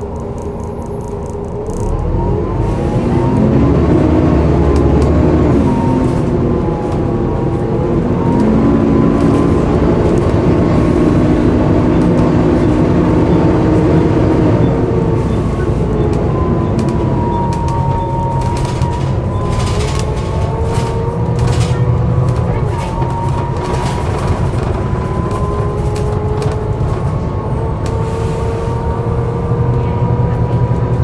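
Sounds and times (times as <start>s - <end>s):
bus engine accelerating: 0.0s - 31.0s.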